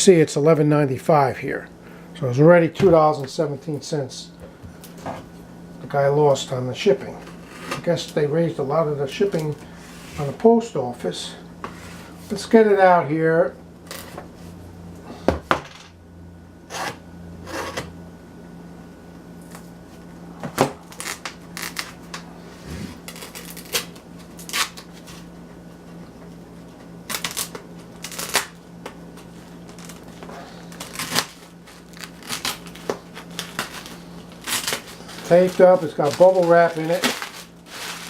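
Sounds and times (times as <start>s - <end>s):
steady low hum: 0.0s - 38.0s
cardboard package scraping and tearing: 20.8s - 25.3s, 27.0s - 28.6s, 29.6s - 38.0s.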